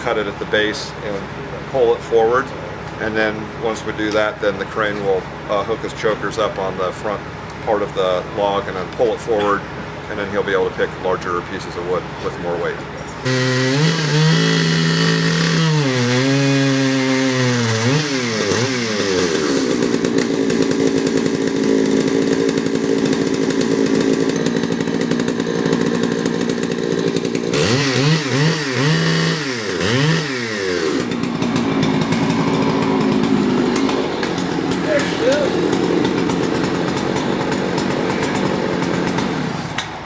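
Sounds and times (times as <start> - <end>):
chainsaw revving and cutting wood: 0.0 - 40.0.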